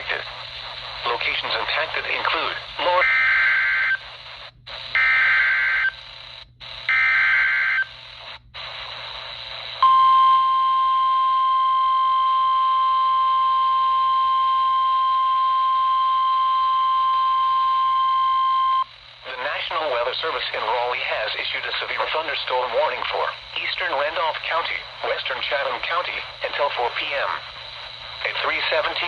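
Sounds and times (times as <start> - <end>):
radio static hiss: 0.0 - 9.8, 18.7 - 29.0
steady warning alarm tone: 1.1 - 4.2, 4.8 - 29.0.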